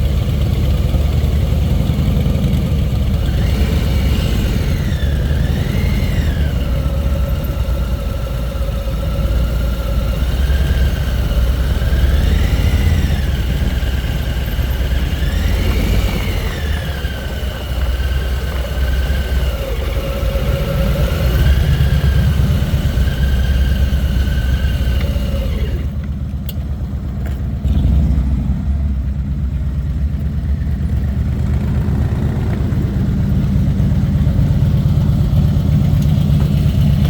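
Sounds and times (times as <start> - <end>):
bike motor whine: 0.0 - 26.0
wind rumbling on microphone: 11.7 - 23.6.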